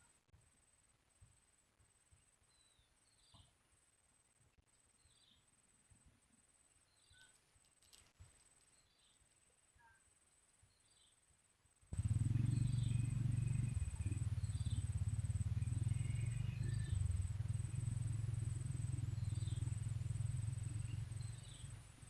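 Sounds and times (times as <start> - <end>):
bird chirping: 12.0 - 22.0
high insect whine: 12.0 - 22.0
loud low rumble: 12.0 - 22.0.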